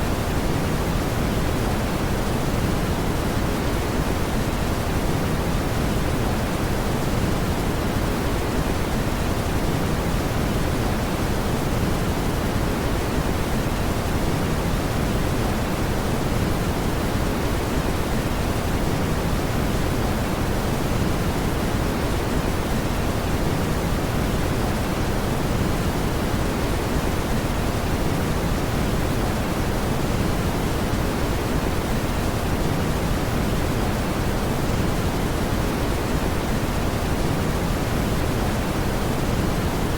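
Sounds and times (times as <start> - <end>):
brown noise hiss: 0.0 - 39.9.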